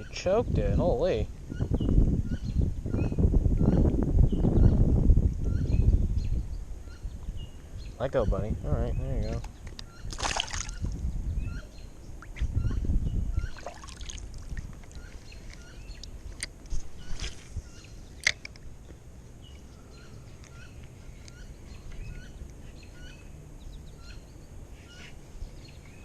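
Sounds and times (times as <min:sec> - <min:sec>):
small birds chirping: 0:00.0 - 0:26.0
sharp clicks: 0:18.2 - 0:18.7.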